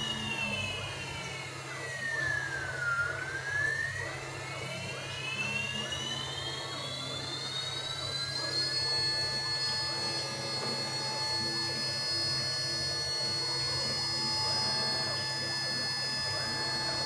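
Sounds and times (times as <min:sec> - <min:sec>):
router spindle whine: 0:00.0 - 0:17.0.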